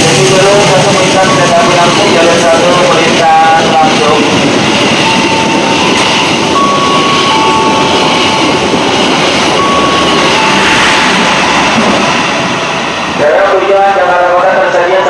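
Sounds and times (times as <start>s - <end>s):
train wheels rushing on rails: 0.0s - 15.0s
thin high tones: 6.2s - 13.0s.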